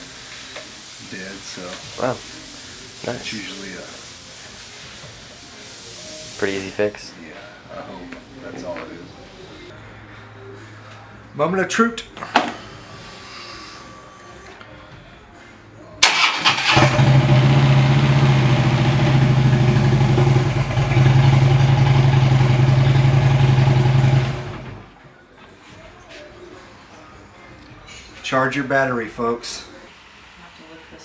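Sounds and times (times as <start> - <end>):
car engine cranking: 16.0 - 24.8
car engine running: 16.8 - 24.8.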